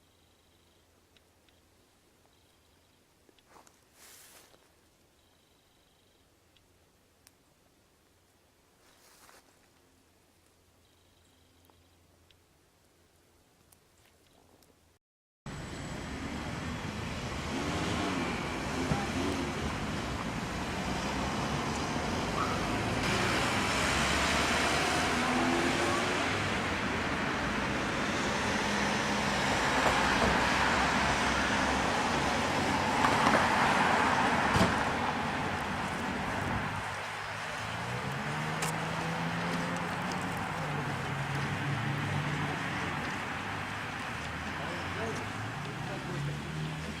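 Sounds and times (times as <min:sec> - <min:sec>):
road traffic noise: 0:15.5 - 0:47.0.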